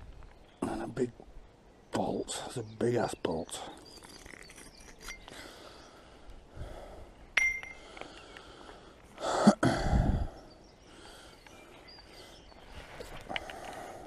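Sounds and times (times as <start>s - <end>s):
metal clink: 4.0s - 5.4s, 7.4s - 7.9s.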